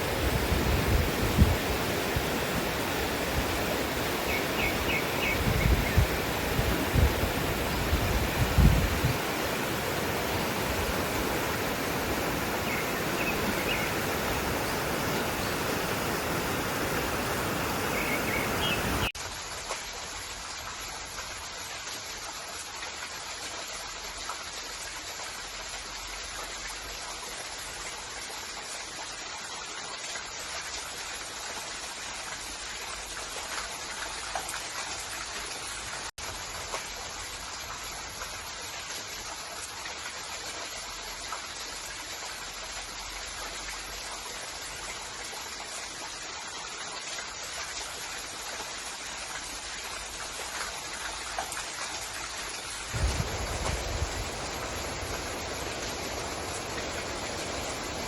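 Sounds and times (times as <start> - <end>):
flowing water rushing: 0.0 - 19.5, 37.8 - 58.0.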